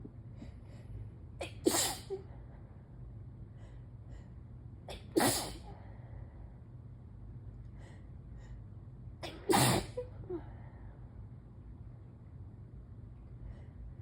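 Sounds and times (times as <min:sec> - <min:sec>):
person sneezing: 0:01.4 - 0:02.3, 0:04.9 - 0:05.7, 0:09.2 - 0:10.1.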